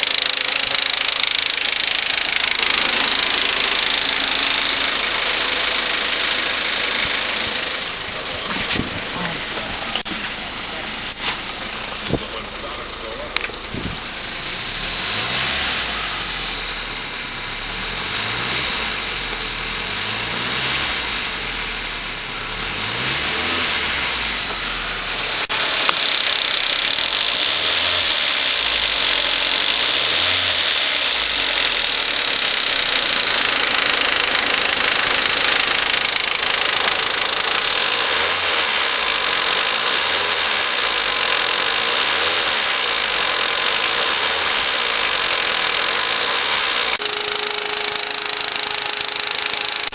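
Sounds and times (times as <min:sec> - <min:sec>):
engine ticking noise: 0:00.0 - 0:16.9, 0:25.6 - 0:49.9
car engine running: 0:00.0 - 0:49.9
steady high whine: 0:00.2 - 0:14.8.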